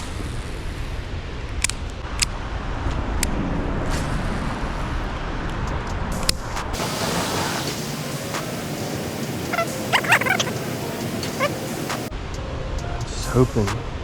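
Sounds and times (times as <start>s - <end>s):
road traffic rumble: 6.8s - 12.1s.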